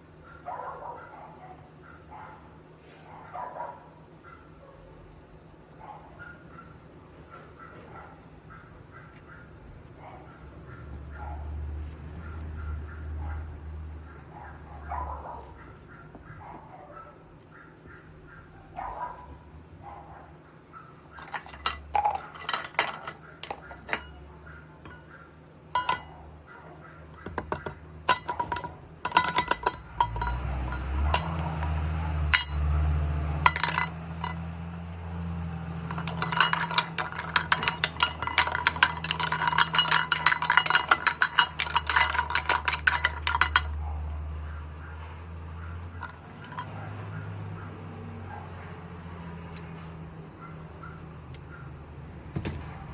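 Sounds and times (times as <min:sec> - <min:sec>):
hard objects clinking: 0:21.2 - 0:25.1, 0:25.7 - 0:26.3, 0:27.1 - 0:44.3, 0:45.6 - 0:47.2.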